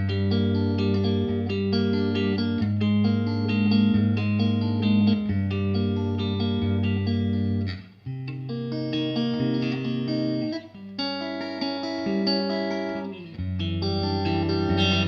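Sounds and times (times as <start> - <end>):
electric guitar chords ringing: 0.0 - 15.0.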